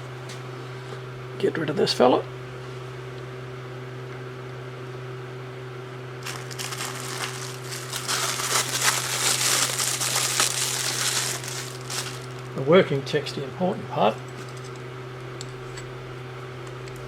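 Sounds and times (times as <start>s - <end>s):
electric motor hum: 6.0s - 17.0s
crinkling rustling handling noise: 6.2s - 12.6s.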